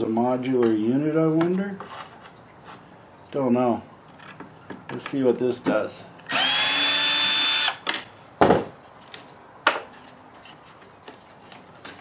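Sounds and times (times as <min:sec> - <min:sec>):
power driver whine: 0:06.3 - 0:07.8.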